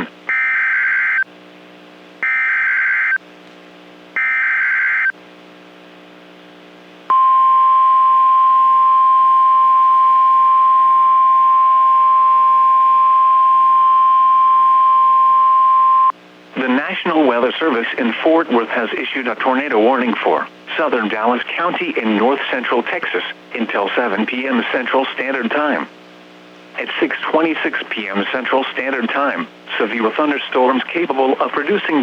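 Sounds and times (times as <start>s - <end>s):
steady warning alarm tone: 0.3s - 1.3s, 2.2s - 3.2s, 4.2s - 5.1s
digital data tone bursts: 4.2s - 5.1s.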